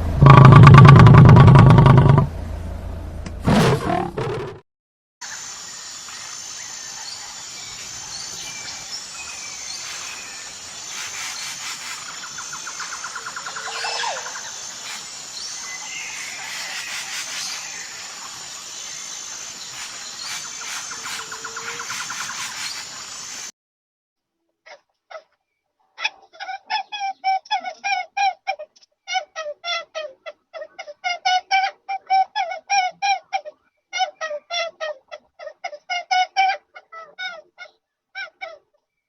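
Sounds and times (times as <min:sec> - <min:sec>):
rapid trilling: 0:00.0 - 0:02.3, 0:03.4 - 0:04.6
high insect drone: 0:05.2 - 0:23.5
birds chirping: 0:05.3 - 0:23.5.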